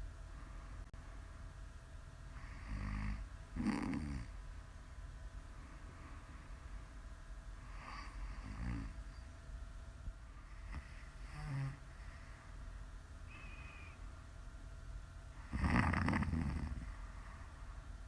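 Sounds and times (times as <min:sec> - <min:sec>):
woman snoring: 0:02.4 - 0:04.3, 0:07.7 - 0:09.0, 0:10.6 - 0:11.8, 0:15.4 - 0:16.9.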